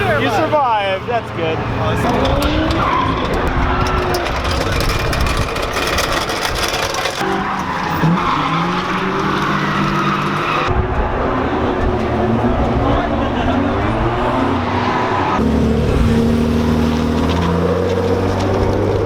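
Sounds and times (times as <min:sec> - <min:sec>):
tyres squealing and skidding: 0:00.0 - 0:19.0
car engine revving hard: 0:11.0 - 0:19.0.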